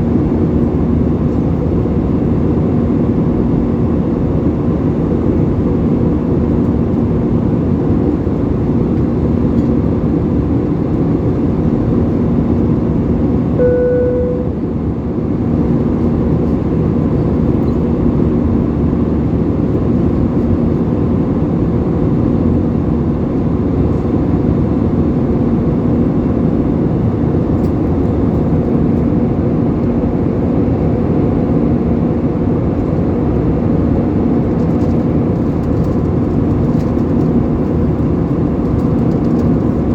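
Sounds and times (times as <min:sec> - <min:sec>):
airplane cabin engine drone: 0:00.0 - 0:39.9
single chime tone: 0:13.6 - 0:14.6.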